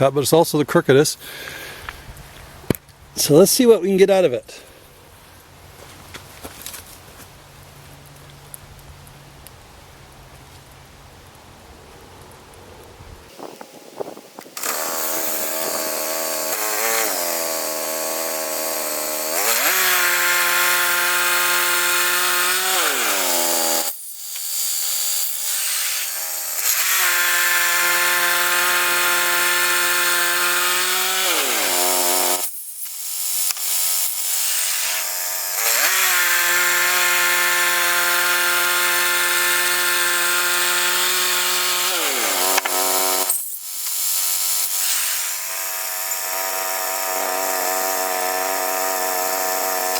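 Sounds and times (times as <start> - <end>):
band blade cutting log: 14.4 - 49.9.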